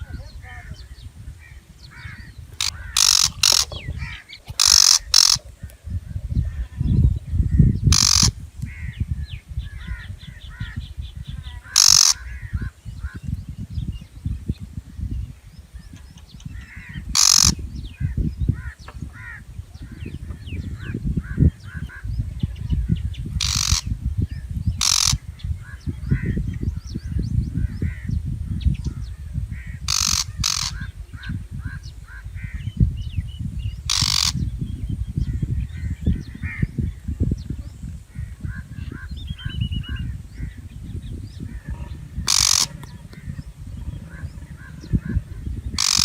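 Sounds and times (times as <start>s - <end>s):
bird harsh rasping calls: 0.0s - 5.6s, 7.6s - 9.0s, 9.7s - 13.2s, 16.5s - 24.0s, 24.8s - 26.4s, 29.0s - 32.8s, 33.8s - 34.5s, 41.2s - 46.0s.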